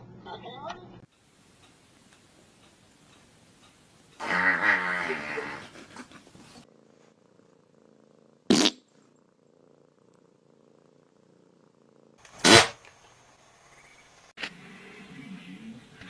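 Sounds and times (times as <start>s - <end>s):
cat purring: 1.0s - 12.4s
short loud noise bursts: 12.3s - 12.9s.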